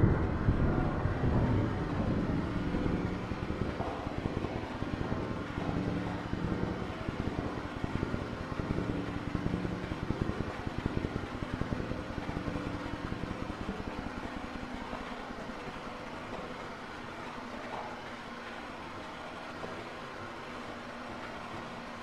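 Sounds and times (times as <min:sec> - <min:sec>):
pulsing synthesizer rumble: 0:00.0 - 0:13.8
droning synthesizer tones: 0:00.0 - 0:16.9.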